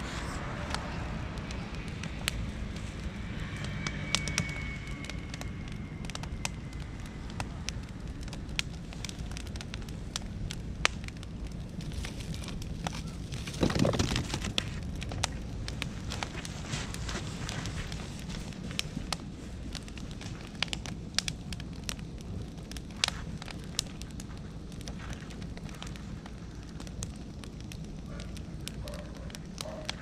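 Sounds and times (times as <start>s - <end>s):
low rush of fire: 0.0s - 30.0s
wood fire crackling and popping: 0.0s - 30.0s
faint thin whistle: 3.6s - 6.0s.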